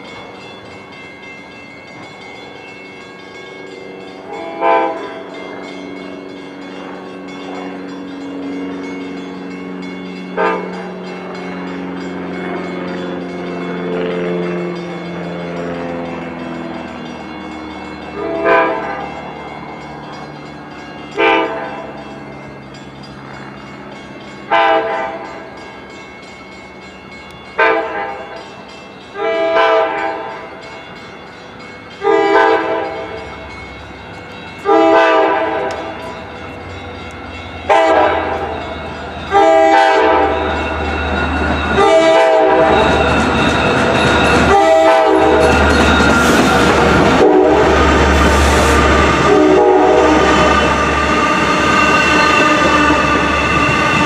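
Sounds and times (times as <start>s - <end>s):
train rumbling and rattling: 0.0s - 54.0s
train horn short blasts: 4.3s - 5.2s, 10.3s - 11.0s, 18.2s - 19.0s, 21.2s - 21.9s, 24.5s - 25.3s, 27.6s - 28.4s, 29.2s - 30.3s, 32.0s - 33.1s, 34.7s - 35.9s, 37.7s - 38.6s, 39.3s - 40.4s, 41.8s - 42.9s, 44.5s - 45.5s, 47.1s - 50.7s.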